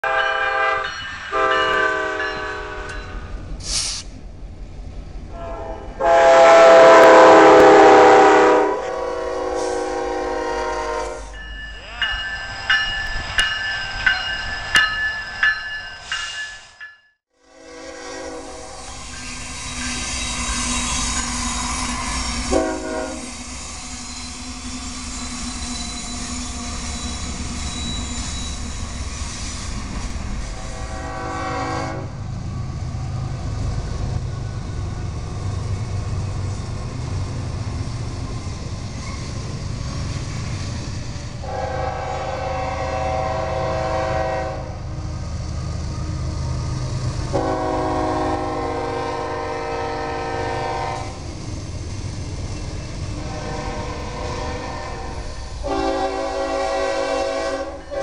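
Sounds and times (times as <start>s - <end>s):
locomotive air horn blasts: 0.0s - 3.2s, 5.3s - 11.4s, 17.4s - 18.8s, 22.4s - 23.4s, 30.5s - 32.2s, 41.4s - 44.8s, 47.3s - 51.2s, 53.2s - 58.0s
low rumble of train: 0.0s - 58.0s.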